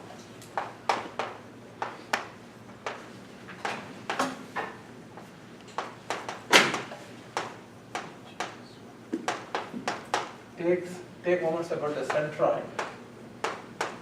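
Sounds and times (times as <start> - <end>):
chalk tapping on blackboard: 0.6 - 3.1, 5.8 - 10.4.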